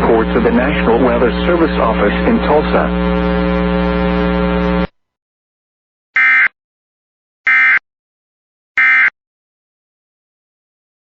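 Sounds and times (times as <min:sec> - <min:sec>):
buzzy digital tone bursts: 0:00.0 - 0:04.9.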